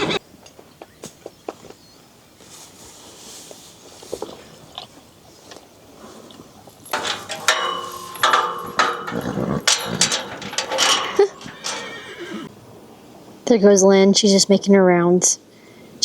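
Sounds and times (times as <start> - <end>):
horse whinnying: 7.0 - 12.5.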